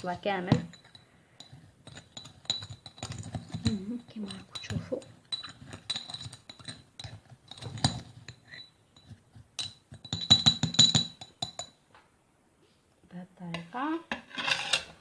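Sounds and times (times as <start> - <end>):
spoon clinking against glass jar: 0.6 - 11.8.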